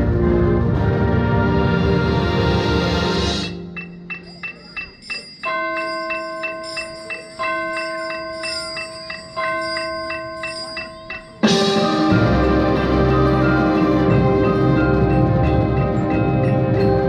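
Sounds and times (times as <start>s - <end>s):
marching band music: 0.0s - 5.7s, 10.5s - 17.0s
ringing bell tones: 3.6s - 12.2s.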